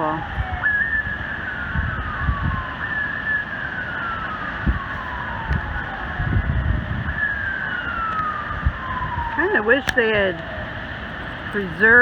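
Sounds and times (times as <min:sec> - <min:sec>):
distant siren: 0:00.0 - 0:12.0.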